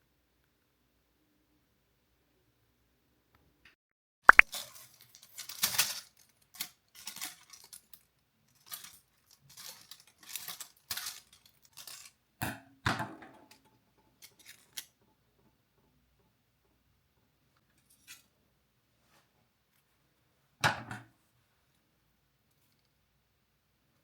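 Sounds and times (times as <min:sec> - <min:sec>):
clicks and rustles of small objects: 0:04.3 - 0:12.4, 0:13.2 - 0:15.9, 0:22.5 - 0:23.0.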